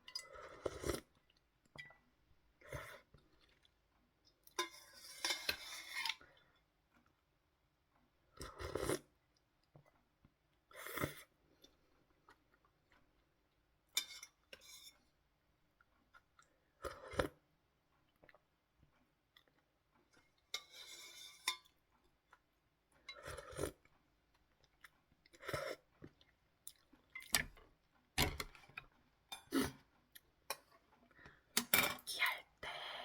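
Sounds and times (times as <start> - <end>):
person chewing and slurping noodles: 0.1 - 2.0, 2.6 - 3.8, 8.4 - 10.0, 15.8 - 31.5.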